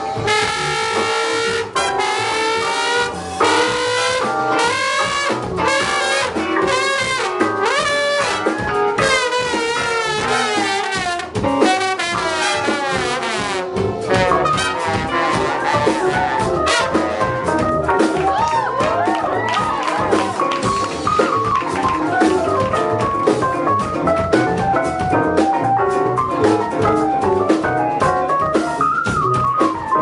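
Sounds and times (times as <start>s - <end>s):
wind ensemble playing free music: 0.0s - 18.0s.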